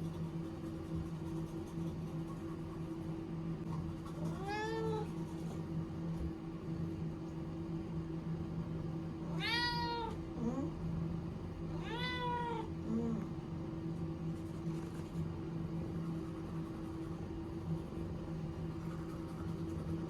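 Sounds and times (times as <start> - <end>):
cat meowing: 9.3 - 10.2, 11.7 - 12.7.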